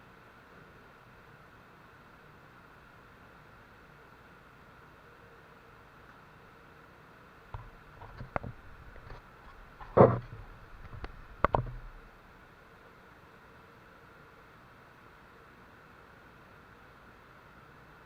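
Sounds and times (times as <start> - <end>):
faint steady hiss: 0.0 - 18.0
knocks and clatters: 7.6 - 11.9.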